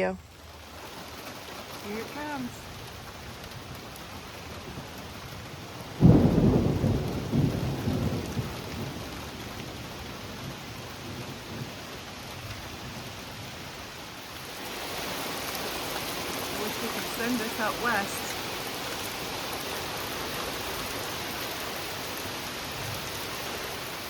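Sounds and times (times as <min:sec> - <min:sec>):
steady rain: 0:00.0 - 0:24.0
thunder clap rumbling: 0:03.1 - 0:13.3.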